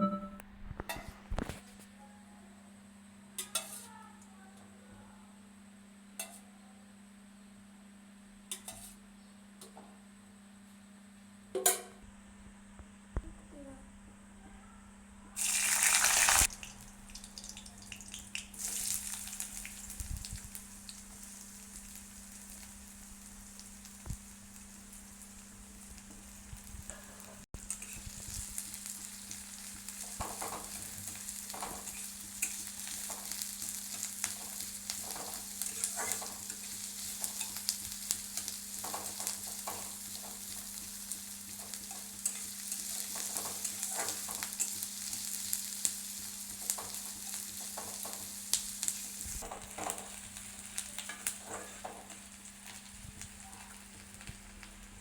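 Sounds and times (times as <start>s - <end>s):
spoon scraping in pan: 3.4s - 3.9s
food sizzling in hot oil: 15.4s - 55.0s.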